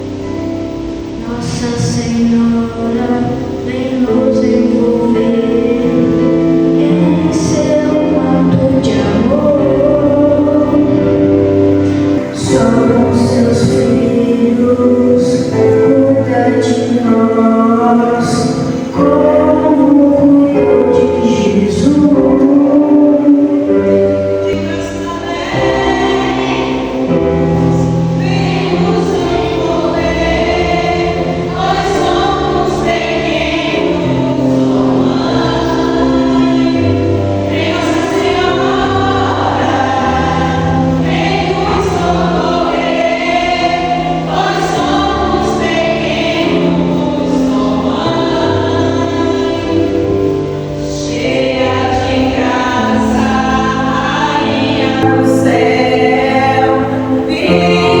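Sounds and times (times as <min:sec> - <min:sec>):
choir singing a hymn: 0:00.0 - 0:58.0
instrumental accompaniment: 0:49.8 - 0:58.0.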